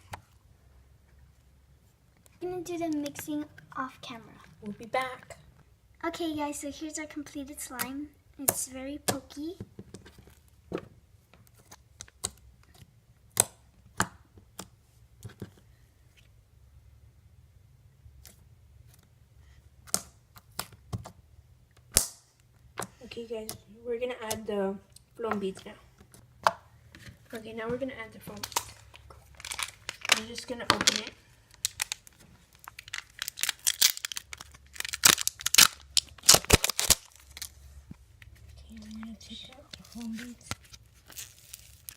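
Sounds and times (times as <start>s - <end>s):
plastic packaging crinkling: 28.3s - 37.7s, 38.6s - 41.9s
slime clicking and popping: 31.6s - 37.5s.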